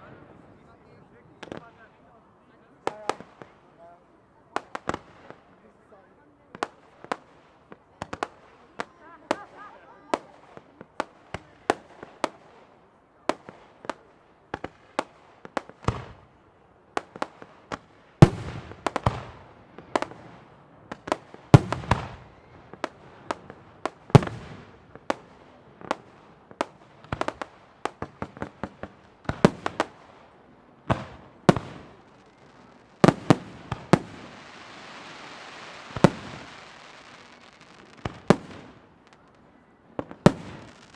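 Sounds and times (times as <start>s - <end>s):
fireworks bursting with bangs: 2.8s - 5.7s, 6.4s - 40.9s
steady hiss: 31.1s - 39.4s.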